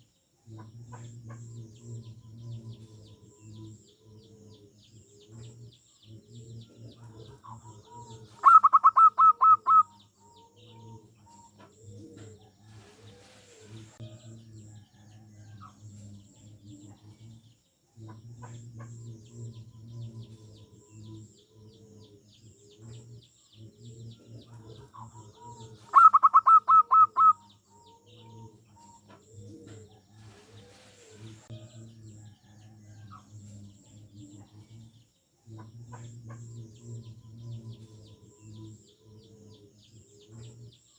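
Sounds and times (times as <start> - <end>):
doves cooing: 0.6 - 14.0, 18.1 - 31.5
burst of rapid high bird notes: 8.4 - 9.8, 26.0 - 27.4.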